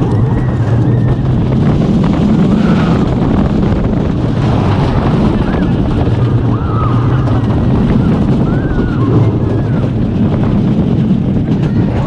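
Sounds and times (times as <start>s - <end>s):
roller coaster rumbling on track: 0.0s - 12.0s
wind on microphone: 0.0s - 12.0s
riders screaming: 2.4s - 3.2s, 5.3s - 10.0s.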